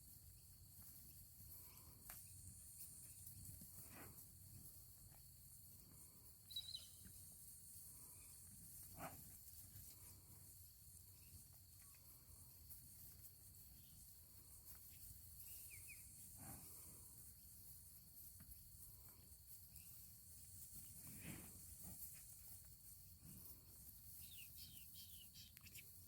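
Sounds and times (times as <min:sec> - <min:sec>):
faint chirp: 0:06.1 - 0:07.2, 0:15.0 - 0:16.3, 0:24.1 - 0:26.0.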